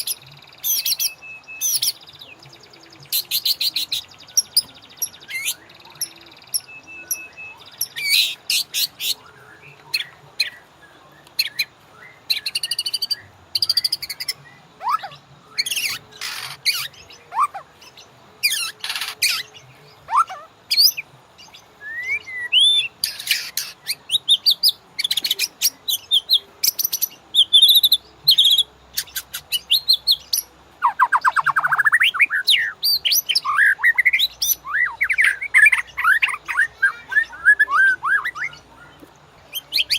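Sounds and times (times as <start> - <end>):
bird singing whistles and chips: 0.0 - 2.1, 3.1 - 9.2, 12.3 - 17.6, 21.8 - 38.6
rapid rattling bird trill: 0.0 - 10.6, 11.4 - 21.1, 21.9 - 39.9.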